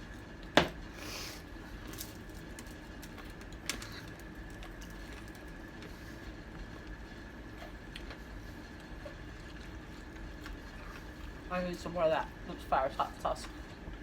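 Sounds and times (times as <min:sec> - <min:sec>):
crackly rustle: 0:01.6 - 0:11.4.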